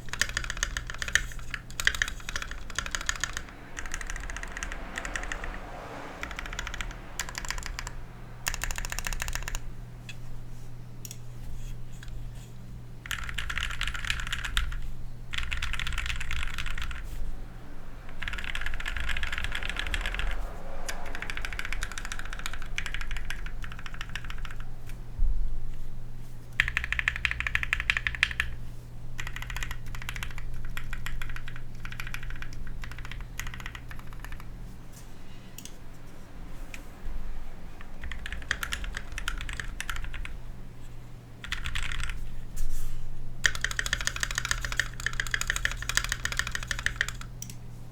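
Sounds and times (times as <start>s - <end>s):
mechanical keyboard typing: 0.0s - 9.7s, 13.0s - 17.2s, 18.1s - 24.7s, 26.5s - 28.6s, 29.2s - 34.5s, 37.8s - 40.4s, 41.4s - 42.2s, 43.4s - 47.6s.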